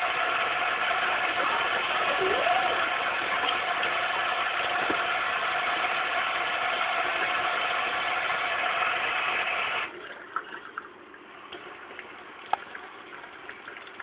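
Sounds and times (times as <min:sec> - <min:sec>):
water dripping: 0:00.0 - 0:08.4, 0:09.8 - 0:14.0
faint hum: 0:00.0 - 0:08.7
water running from tap: 0:00.0 - 0:10.9, 0:11.5 - 0:14.0.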